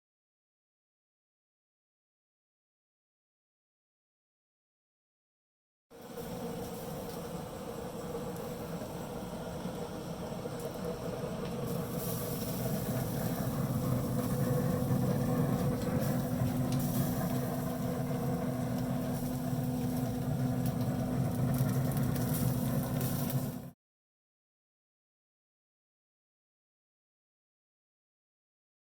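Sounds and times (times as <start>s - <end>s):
mechanical hum: 5.9s - 23.8s.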